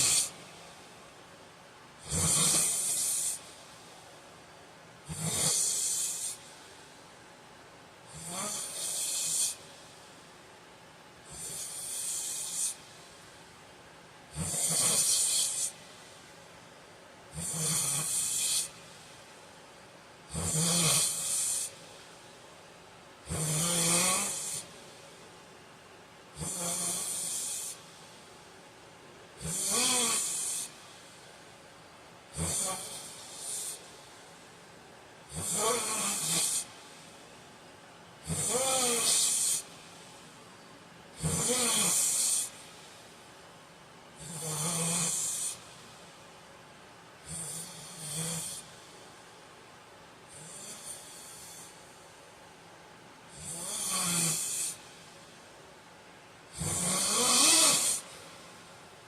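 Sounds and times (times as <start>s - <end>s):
man snoring: 0.0s - 0.4s, 2.0s - 3.4s, 5.0s - 6.4s, 8.1s - 9.6s, 11.3s - 12.8s, 14.3s - 15.8s, 17.3s - 18.8s, 20.3s - 21.8s, 23.2s - 24.7s, 26.4s - 27.8s, 29.4s - 30.8s, 32.3s - 33.9s, 35.3s - 36.7s, 38.2s - 39.7s, 41.2s - 42.6s, 44.2s - 45.6s, 47.2s - 48.7s, 50.3s - 51.7s, 53.3s - 54.8s, 56.5s - 58.1s.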